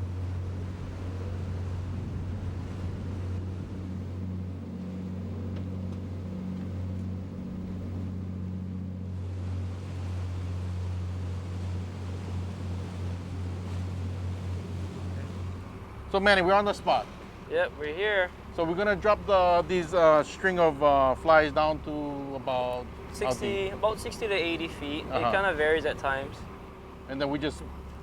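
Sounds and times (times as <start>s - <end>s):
boat engine droning: 0.0s - 28.0s
water noise: 0.0s - 28.0s
wind noise: 0.6s - 4.1s.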